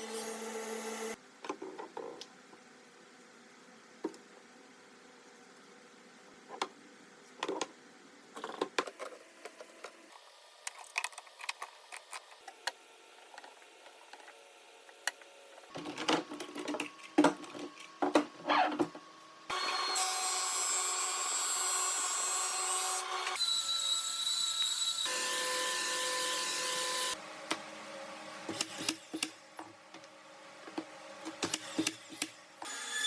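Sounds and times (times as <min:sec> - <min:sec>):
power tool high whine: 0:19.5 - 0:27.2.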